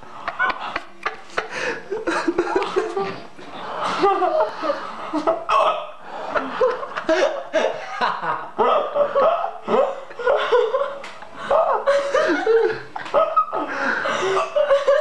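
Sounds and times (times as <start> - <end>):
man laughing uncontrollably: 0.1 - 3.3, 6.4 - 15.0.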